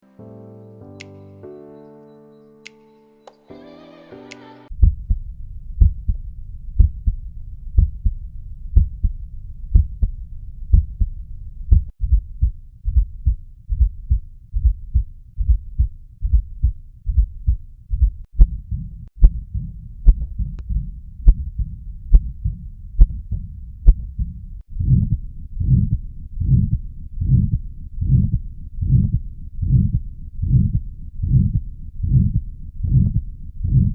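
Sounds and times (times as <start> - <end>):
heartbeats: 4.8 - 33.9.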